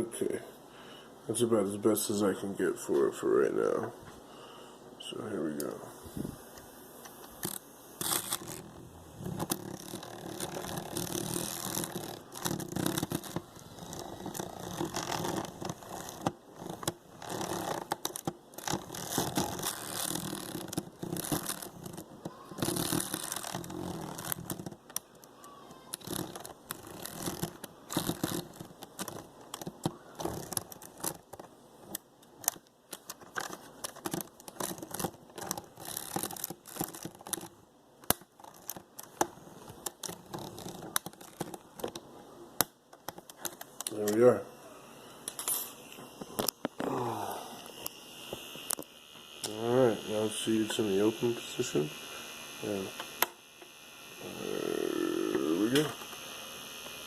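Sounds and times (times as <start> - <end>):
rustling handling noise: 5.4 - 44.4.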